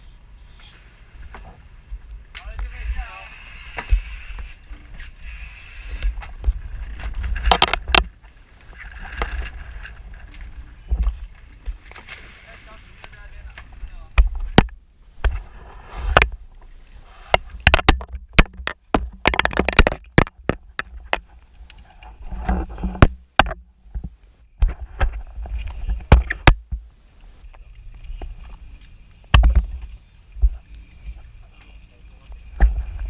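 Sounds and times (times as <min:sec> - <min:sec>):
knocks and clicks: 0:17.3 - 0:21.2.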